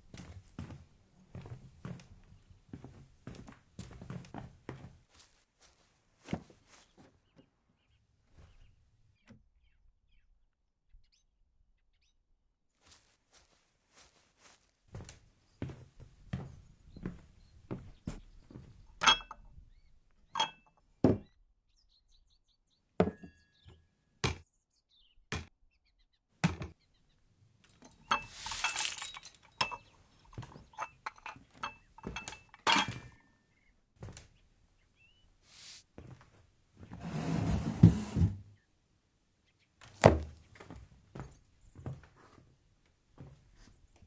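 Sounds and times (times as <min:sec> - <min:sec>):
knocks clinks and thuds: 0:17.8 - 0:19.5, 0:20.4 - 0:21.3, 0:27.6 - 0:33.2.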